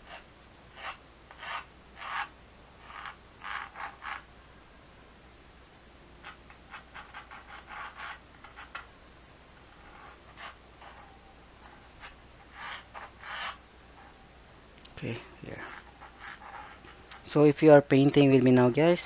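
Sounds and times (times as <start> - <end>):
pencil scratching on paper: 0.0 - 4.3, 6.2 - 8.9, 9.6 - 14.2, 15.5 - 17.4.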